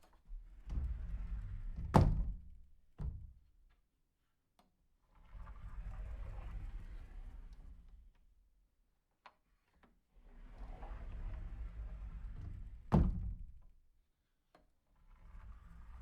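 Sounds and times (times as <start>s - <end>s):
sliding door rolling on track: 0.8s - 1.8s, 5.2s - 7.8s, 10.3s - 12.9s, 15.2s - 16.0s.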